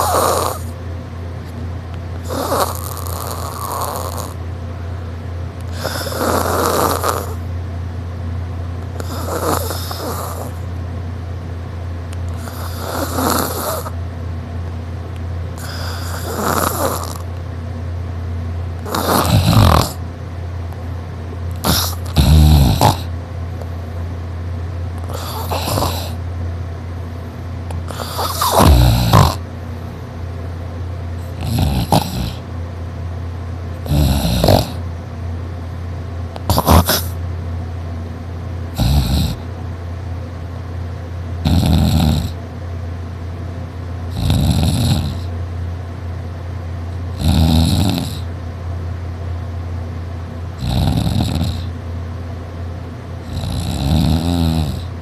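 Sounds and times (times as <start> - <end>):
person snoring loudly: 0.0 - 0.8, 2.2 - 4.4, 5.7 - 7.4, 9.0 - 10.6, 12.3 - 14.0, 15.6 - 17.3, 18.8 - 20.0, 21.6 - 23.1, 25.0 - 26.2, 27.9 - 29.4, 31.2 - 32.4, 33.8 - 34.8, 36.5 - 37.2, 38.8 - 39.4, 41.4 - 42.4, 44.1 - 45.3, 47.2 - 48.3, 50.6 - 51.7, 53.2 - 55.0.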